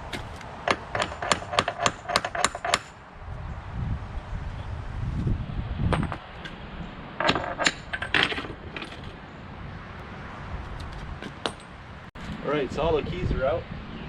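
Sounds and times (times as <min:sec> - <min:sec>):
metallic clinks and clanks: 0:07.2 - 0:09.2.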